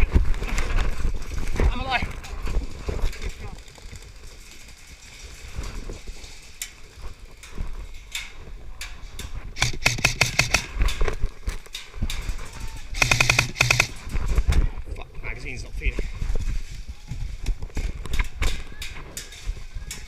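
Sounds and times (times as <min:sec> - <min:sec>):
airsoft gun full-auto bursts: 0:09.6 - 0:10.8, 0:13.0 - 0:14.0.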